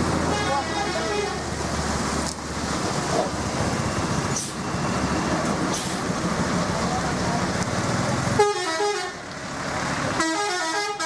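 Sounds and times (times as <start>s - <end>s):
buses driving past: 0.0s - 11.0s
road noise: 0.0s - 11.0s
bus horn blasts: 0.3s - 1.4s, 8.4s - 9.2s, 10.2s - 11.0s.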